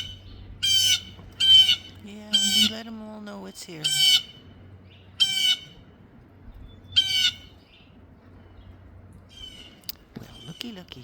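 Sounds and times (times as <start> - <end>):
blue jay harsh calls: 0.0 - 5.9, 6.7 - 7.9, 9.3 - 10.8.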